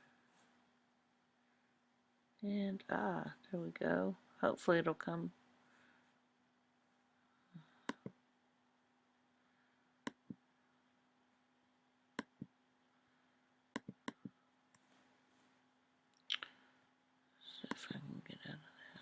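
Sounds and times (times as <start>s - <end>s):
faint steady hum: 0.0s - 19.0s
computer mouse clicking: 7.8s - 8.2s, 13.7s - 14.8s.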